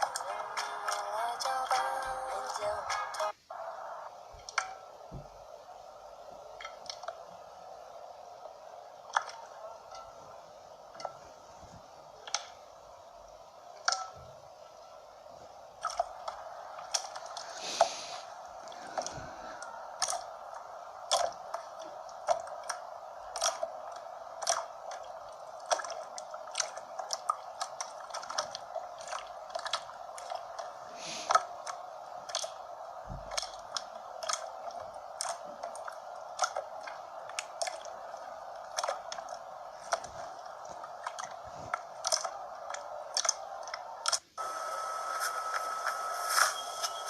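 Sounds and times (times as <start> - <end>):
slime squeezed with crackling pops: 15.8 - 44.3.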